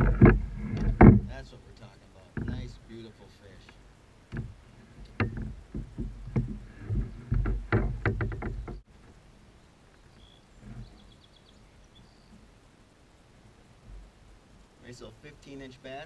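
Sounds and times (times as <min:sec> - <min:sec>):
knocks against kayak hull: 0:00.0 - 0:01.4, 0:04.3 - 0:08.8
faint bird chirps: 0:09.4 - 0:12.6.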